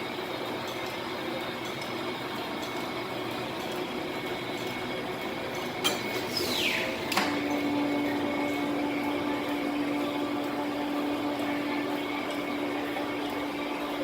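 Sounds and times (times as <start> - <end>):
short falling squeal: 6.3 - 7.0.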